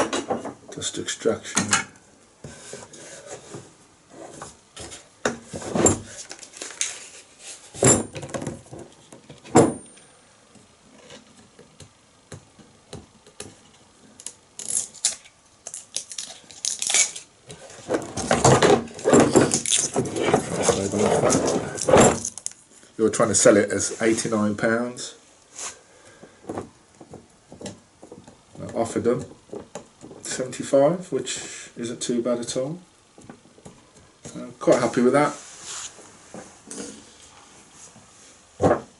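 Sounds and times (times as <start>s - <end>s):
plastic and metal parts clattering: 14.6s - 22.6s.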